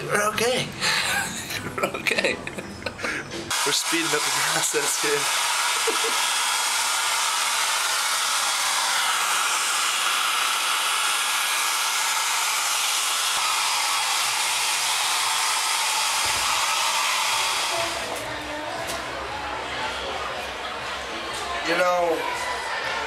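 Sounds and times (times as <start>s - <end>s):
hair dryer blowing: 3.5s - 18.4s.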